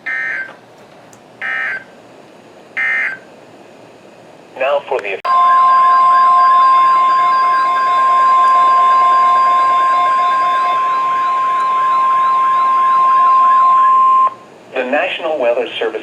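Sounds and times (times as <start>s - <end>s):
steady warning alarm tone: 0.0s - 0.5s, 1.4s - 1.9s, 2.8s - 3.3s, 5.3s - 14.5s
faint warbling tone: 5.9s - 14.4s.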